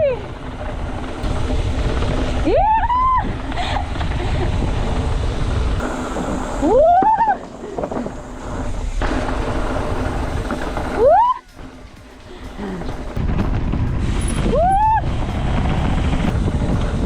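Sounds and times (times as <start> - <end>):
bike tyre rumble: 0.0 - 17.0
wind buffeting microphone: 0.0 - 17.0
rider whooping: 2.4 - 4.0, 5.8 - 13.2, 14.4 - 15.7.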